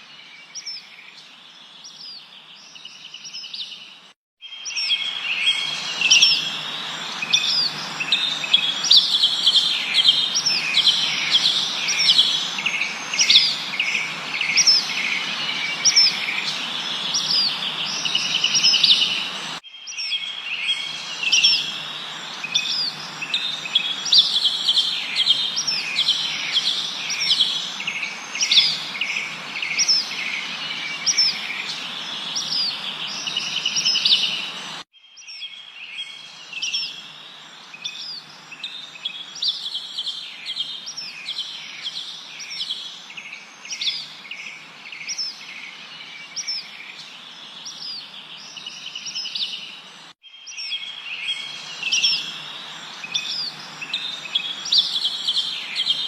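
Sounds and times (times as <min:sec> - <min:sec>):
birds chirping and singing: 0:00.0 - 0:56.0
steady background hiss: 0:05.0 - 0:19.6, 0:20.2 - 0:34.8, 0:50.9 - 0:56.0.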